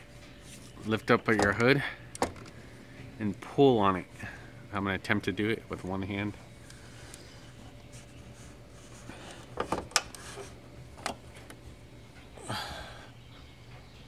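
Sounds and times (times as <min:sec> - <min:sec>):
person exhaling with effort: 0:12.4 - 0:13.2.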